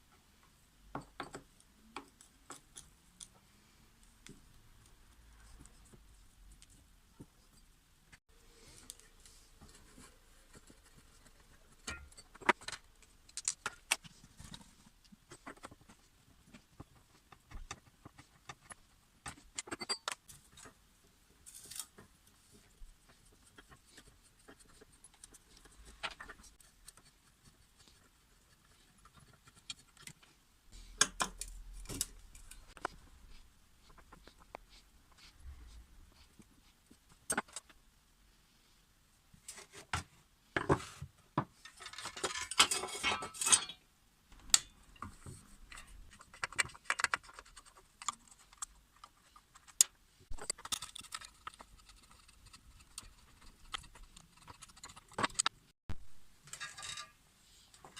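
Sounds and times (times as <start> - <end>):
metal parts clicking and clinking: 41.6 - 43.8.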